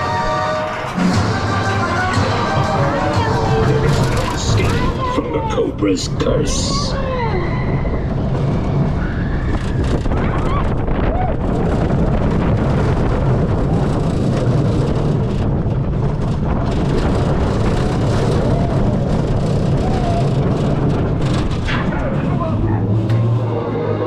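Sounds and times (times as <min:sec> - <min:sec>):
faint ride audio: 0:00.0 - 0:11.8
roller coaster track rumble: 0:00.0 - 0:24.0
wind on microphone: 0:06.2 - 0:24.0.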